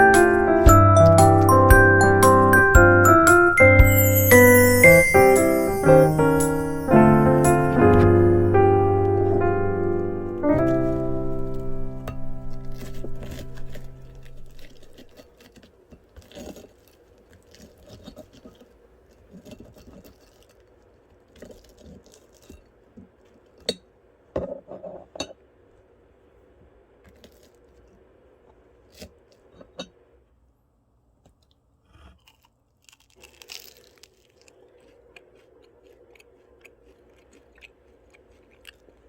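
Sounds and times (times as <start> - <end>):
soft crisp crunching: 3.8 - 23.7, 27.0 - 29.6, 31.2 - 39.0.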